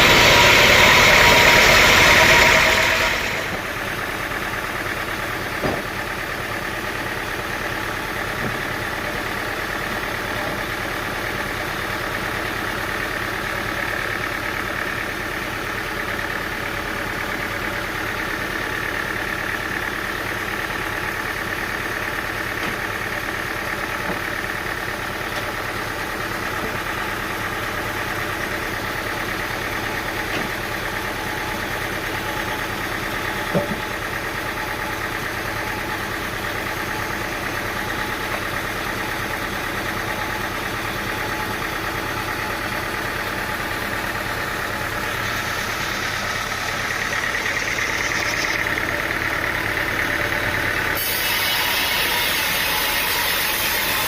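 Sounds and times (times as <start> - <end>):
engine idling: 0.0 - 51.3.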